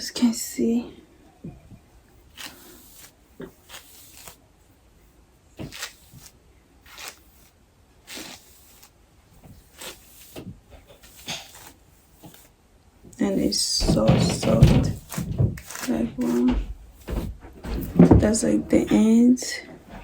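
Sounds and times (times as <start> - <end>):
camera handling rustles and bumps: 13.8 - 19.1.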